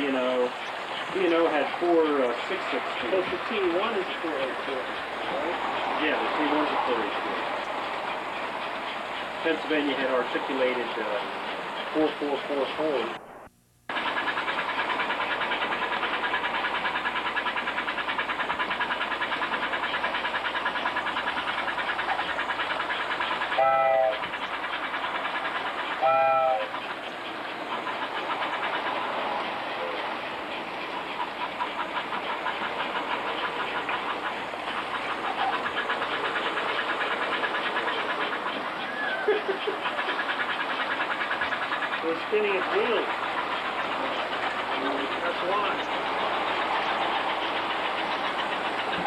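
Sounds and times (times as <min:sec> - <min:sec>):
model train motor whirring: 0:00.0 - 0:49.0
rapid track clicking: 0:00.0 - 0:49.0
model train whistle: 0:23.6 - 0:24.3, 0:26.0 - 0:26.7.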